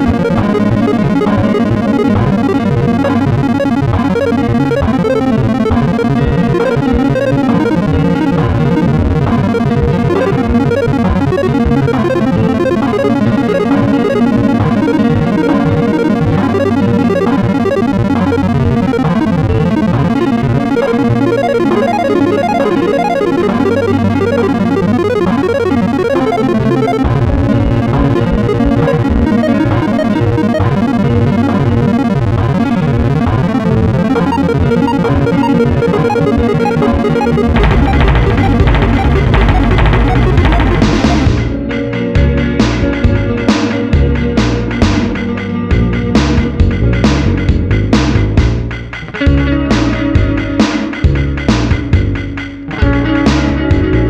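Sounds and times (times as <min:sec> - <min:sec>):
electric guitar with effects: 0:00.0 - 0:42.2.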